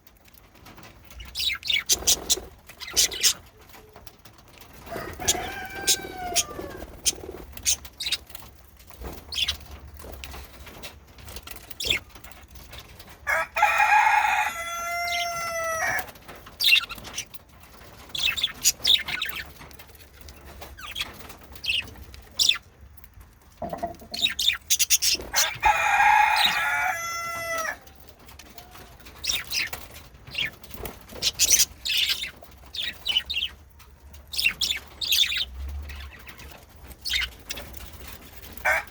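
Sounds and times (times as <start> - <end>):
budgerigars chirping: 1.3 - 3.4, 24.0 - 25.6, 34.3 - 37.4.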